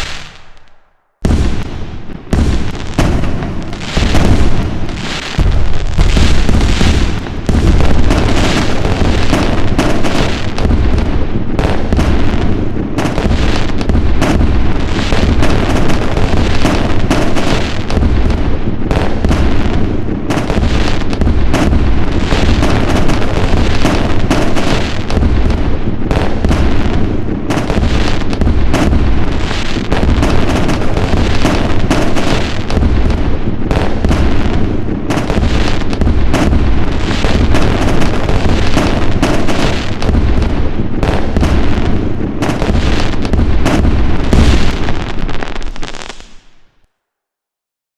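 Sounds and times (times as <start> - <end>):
fireworks bangs and crackles: 0.0 - 46.8.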